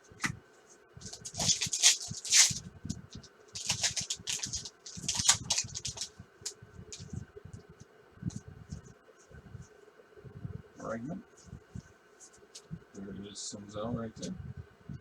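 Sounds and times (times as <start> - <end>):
trading cards flipped by hand: 1.0 - 6.1.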